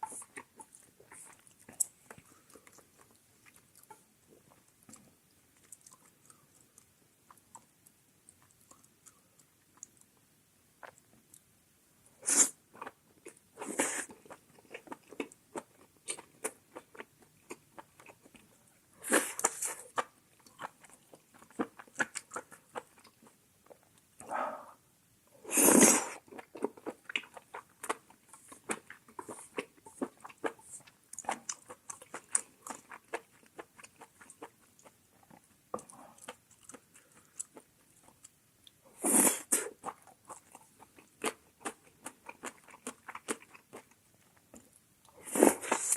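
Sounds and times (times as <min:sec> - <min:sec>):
wet chewing and lip-smacking: 0:00.0 - 0:11.5, 0:19.3 - 0:24.1, 0:26.2 - 0:38.8, 0:39.5 - 0:45.9.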